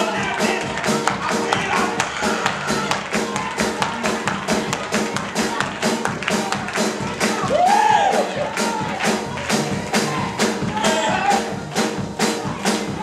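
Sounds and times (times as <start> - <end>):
gospel music with drums: 0.0 - 13.0.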